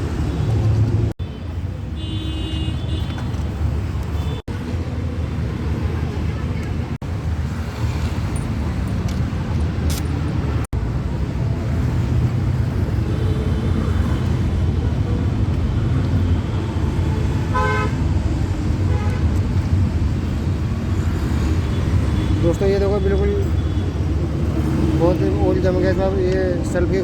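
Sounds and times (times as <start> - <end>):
road traffic rumble: 0.0 - 27.0
vehicle horn toot: 2.0 - 3.3, 17.5 - 18.0.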